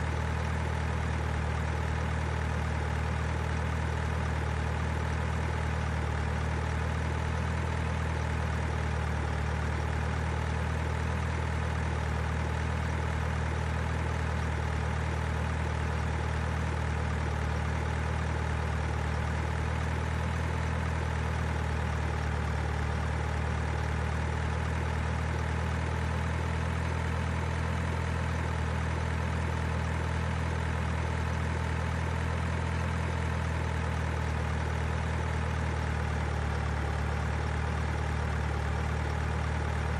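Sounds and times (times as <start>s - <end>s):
engine idling: 0.0s - 39.9s.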